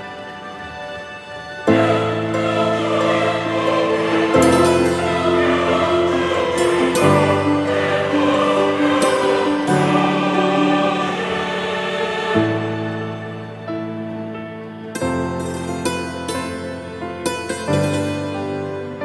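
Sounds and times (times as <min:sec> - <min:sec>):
sustained choral chords: 0:00.0 - 0:19.0.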